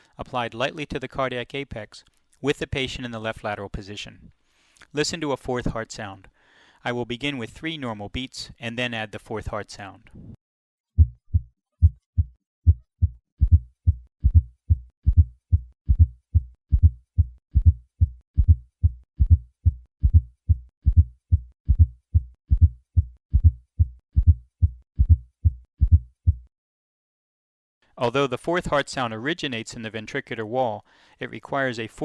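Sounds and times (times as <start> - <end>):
heartbeat: 11.0 - 26.5
low-pitched extra heart sound: 11.0 - 26.5.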